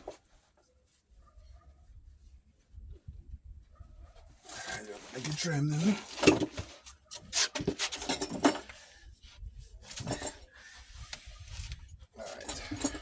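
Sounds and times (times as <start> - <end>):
metal clinking and scraping: 4.5 - 8.9, 9.9 - 10.5, 12.2 - 13.0.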